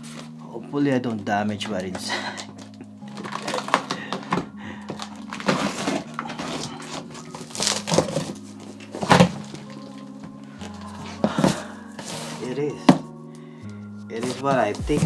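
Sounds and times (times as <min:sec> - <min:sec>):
cardboard box cut and torn: 0:07.3 - 0:08.4.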